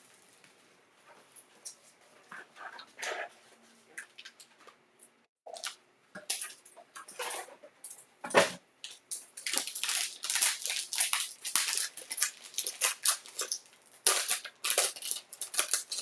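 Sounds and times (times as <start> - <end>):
packaging crinkling and tearing: 8.8 - 16.0.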